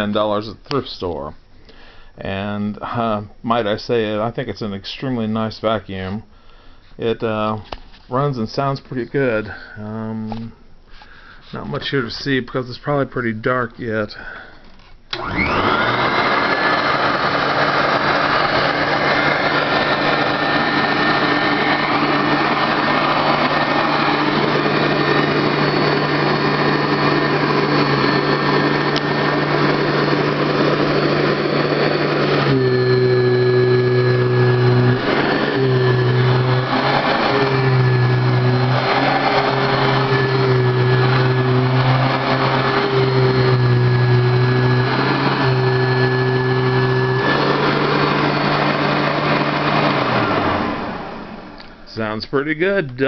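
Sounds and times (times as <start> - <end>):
vacuum cleaner running: 15.1 - 51.8.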